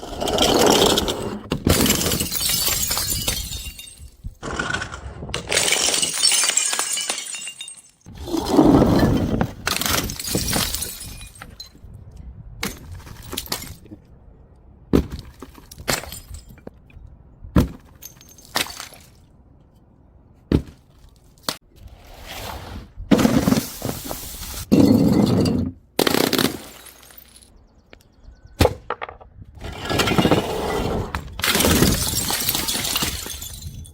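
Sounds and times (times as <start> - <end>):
glass bottle smashing: 1.6 - 4.2, 5.4 - 8.1, 9.0 - 11.8, 24.7 - 27.5, 31.4 - 33.9
broken glass tumbling down steps: 1.6 - 4.3, 5.4 - 11.8, 26.1 - 27.5, 29.8 - 33.9.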